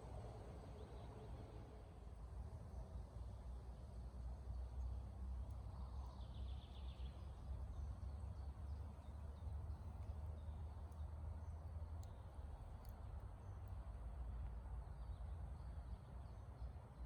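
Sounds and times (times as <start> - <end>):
songbirds chirping: 5.5 - 17.0.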